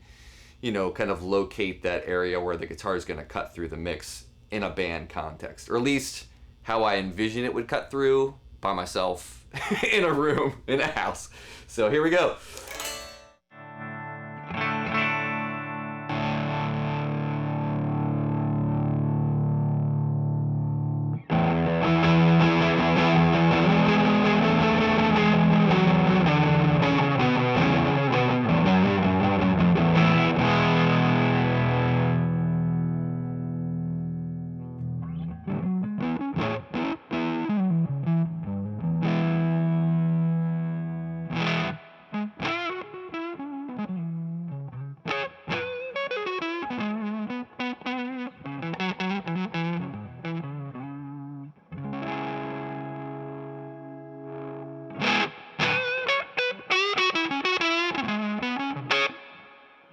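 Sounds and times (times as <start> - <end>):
fuzzed electric guitar chords: 12.7 - 59.9.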